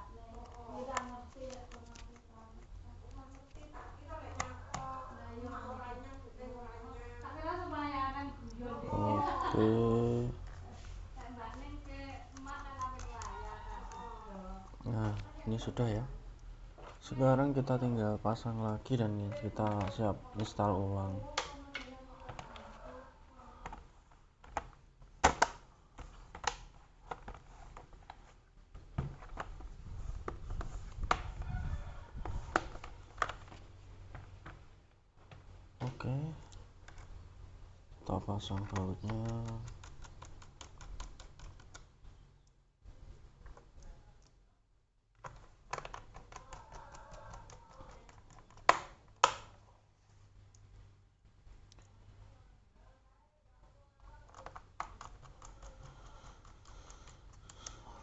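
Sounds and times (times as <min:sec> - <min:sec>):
screwdriver ticking and scraping: 0:11.4 - 0:14.1, 0:38.4 - 0:41.9
sharp clicks: 0:38.6 - 0:42.6
plastic clicks and taps: 0:45.2 - 0:49.6.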